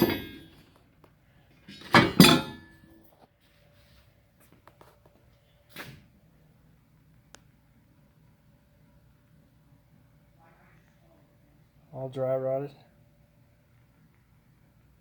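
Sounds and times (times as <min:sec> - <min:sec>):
metal parts clinking and clattering: 0:00.0 - 0:00.7, 0:01.7 - 0:02.9.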